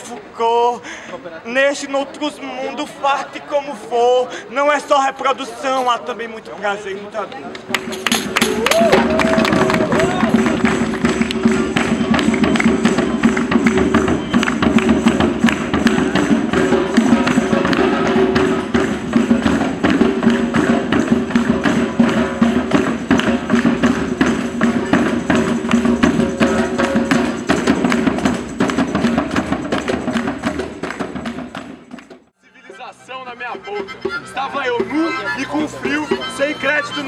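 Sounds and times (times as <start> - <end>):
fast hand percussion: 7.6 - 32.3, 33.5 - 37.0
tambourine jingles: 10.4 - 32.1.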